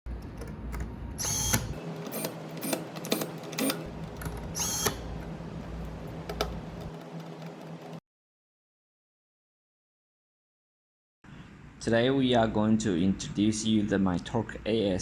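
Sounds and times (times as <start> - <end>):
sharp clicks: 1.2 - 5.0
electric screwdriver whirring: 1.2 - 7.9.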